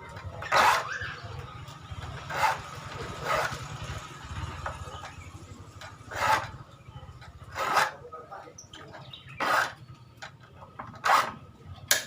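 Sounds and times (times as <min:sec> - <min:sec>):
file rasping on saw teeth: 0:06.1 - 0:06.6, 0:07.5 - 0:08.0, 0:09.4 - 0:09.8.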